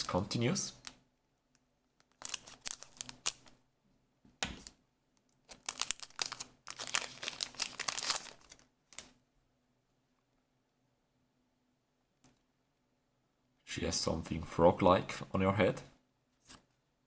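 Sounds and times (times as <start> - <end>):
wrapper crinkling and tearing: 2.0 - 3.6, 5.4 - 9.1.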